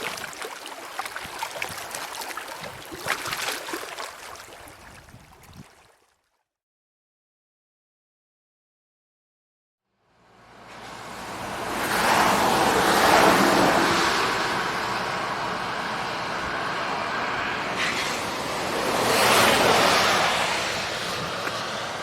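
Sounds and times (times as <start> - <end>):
waves washing onto rocky shore: 0.0 - 5.0, 17.8 - 22.0.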